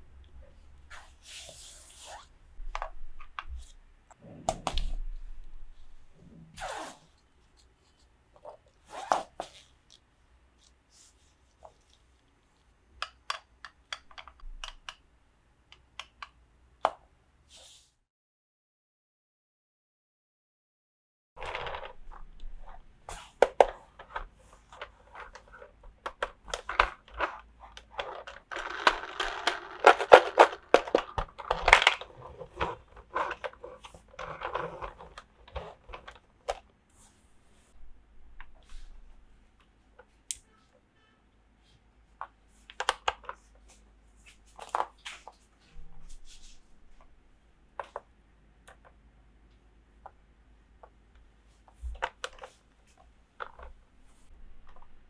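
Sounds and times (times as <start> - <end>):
packaging rustling: 26.6 - 36.2
toy pieces clicking: 28.0 - 32.0.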